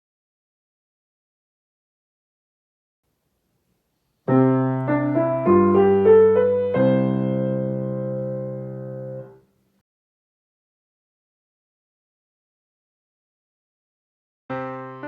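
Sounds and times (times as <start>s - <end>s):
piano chords and melody: 4.2s - 9.4s, 14.5s - 15.0s.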